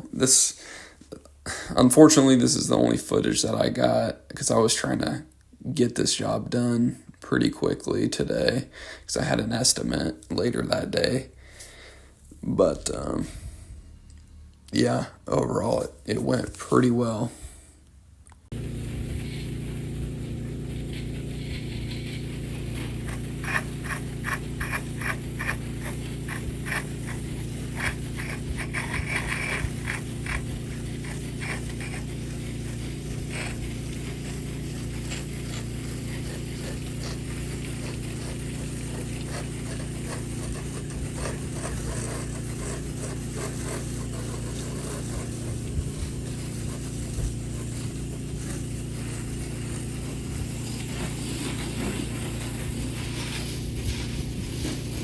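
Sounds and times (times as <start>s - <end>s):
engine running: 18.5s - 55.0s
clicking and scraping: 20.8s - 32.2s.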